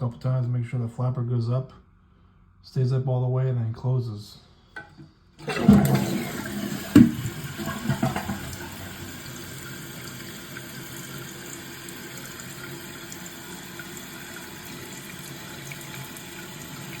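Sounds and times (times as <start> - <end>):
toilet flush gurgles: 5.4 - 17.0
toilet tank refilling hiss: 5.4 - 17.0.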